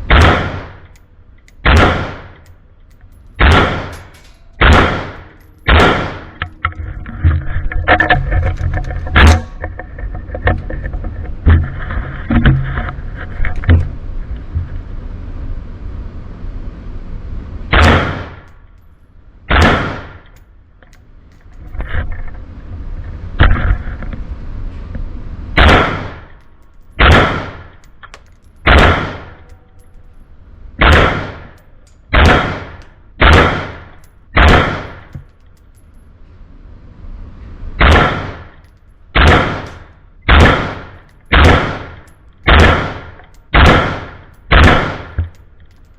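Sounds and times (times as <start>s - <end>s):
rifle shots: 0.1s - 0.9s, 1.6s - 2.4s, 3.4s - 6.4s, 17.7s - 18.5s, 19.5s - 20.3s, 25.6s - 26.4s, 27.0s - 27.8s, 28.6s - 29.4s, 30.8s - 35.1s, 37.8s - 38.6s, 39.2s - 45.3s.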